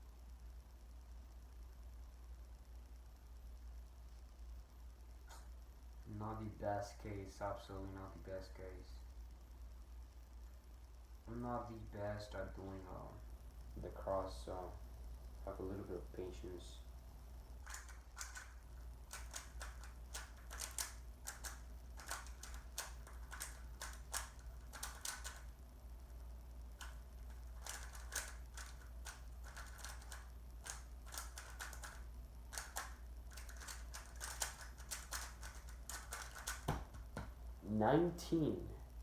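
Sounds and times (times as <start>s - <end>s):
puzzle cube clicking: 17.6s - 25.5s, 26.8s - 37.2s.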